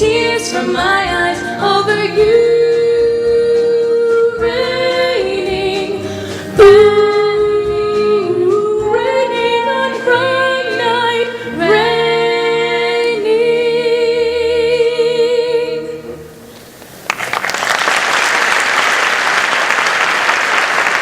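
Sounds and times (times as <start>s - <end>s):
voices singing with vibrato: 0.0s - 16.3s
backing music: 0.0s - 17.4s.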